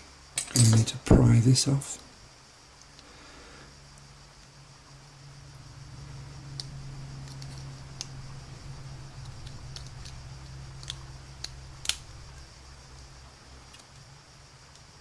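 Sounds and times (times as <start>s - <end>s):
steady low hum: 0.0s - 15.0s
sharp metallic clicks: 10.8s - 12.1s.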